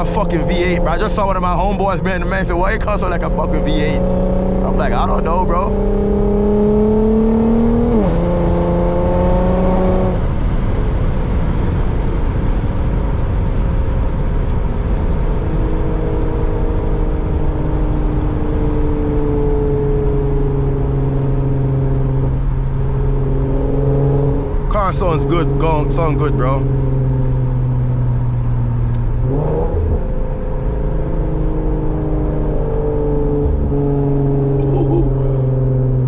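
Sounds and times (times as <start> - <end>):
car engine and loud exhaust accelerating: 0.0 - 36.0
road roar: 0.0 - 36.0.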